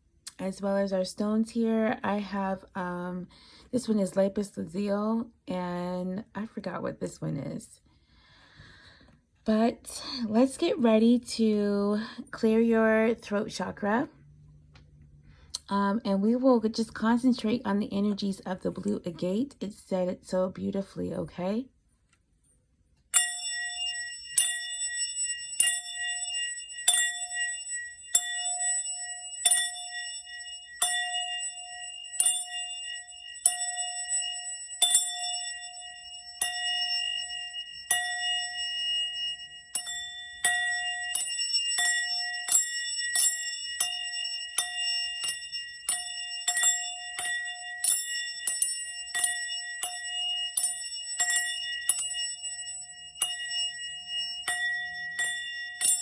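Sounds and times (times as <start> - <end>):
small metal bell ringing: 23.1 - 56.0.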